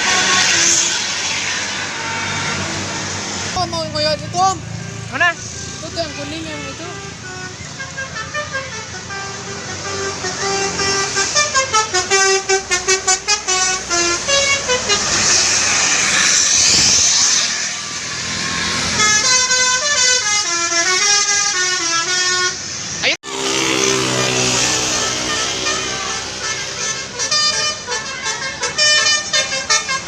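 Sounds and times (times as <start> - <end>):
loud hiss: 0.0 - 3.6, 5.2 - 6.4, 10.3 - 19.8
multi-tone bus horn tune: 0.0 - 3.6, 4.3 - 30.0.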